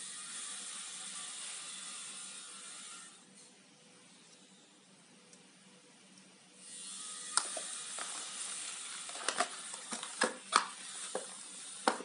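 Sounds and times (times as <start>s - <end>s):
packaging rustling: 7.4s - 11.3s.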